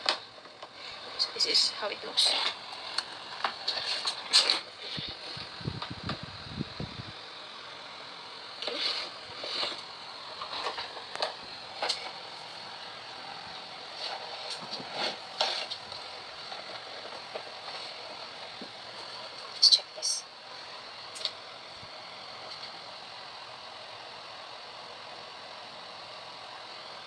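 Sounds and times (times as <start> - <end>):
low bumping rumble: 5.4 - 7.1.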